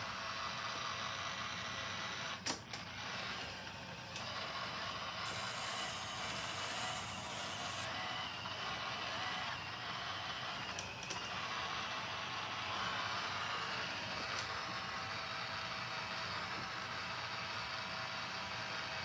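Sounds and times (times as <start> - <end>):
robot vacuum whirring: 1.0 - 18.9
high hiss: 5.3 - 7.9.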